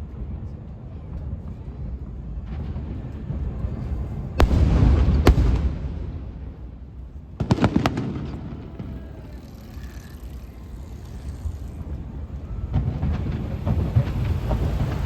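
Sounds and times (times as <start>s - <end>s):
rolling boom: 2.4s - 9.5s, 10.2s - 15.0s
firework bangs: 2.5s - 10.4s, 11.5s - 15.0s.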